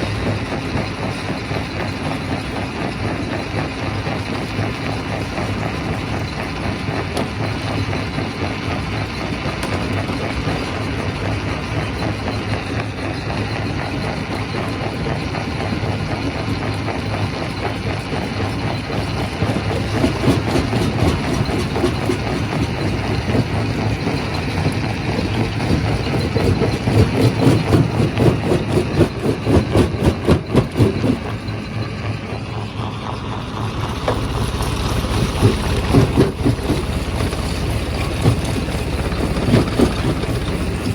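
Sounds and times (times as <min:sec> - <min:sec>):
rock crusher drone: 0:00.0 - 0:40.9
rock clattering in crusher: 0:18.9 - 0:31.3, 0:35.1 - 0:40.9.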